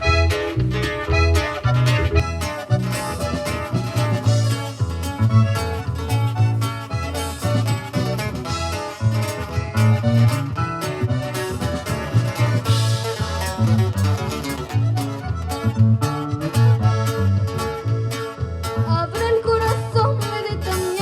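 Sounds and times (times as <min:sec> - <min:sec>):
bass beat: 0:00.0 - 0:21.0
guitar: 0:00.0 - 0:21.0.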